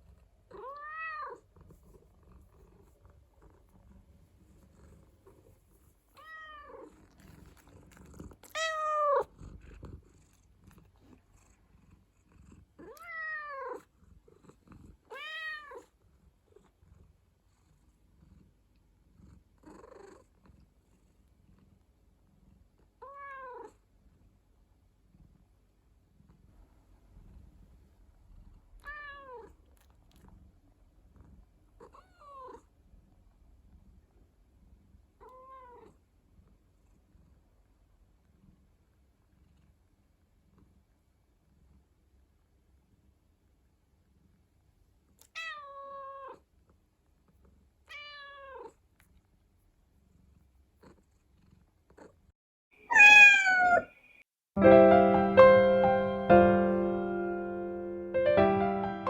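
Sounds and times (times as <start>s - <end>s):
cat purring: 0.0s - 24.4s, 25.0s - 45.2s, 48.6s - 52.3s
cat meowing: 0.5s - 1.4s, 6.2s - 6.9s, 8.4s - 9.3s, 12.8s - 13.8s, 15.1s - 15.8s, 23.0s - 23.7s, 28.8s - 29.5s, 45.3s - 46.4s, 47.9s - 48.7s, 52.8s - 54.0s.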